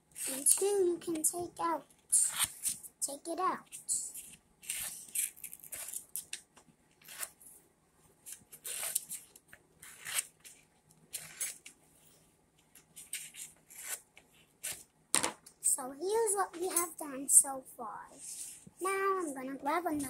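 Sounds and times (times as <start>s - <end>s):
scissors snipping paper: 0.2s - 1.2s, 2.2s - 2.8s, 4.0s - 6.4s, 8.3s - 11.7s.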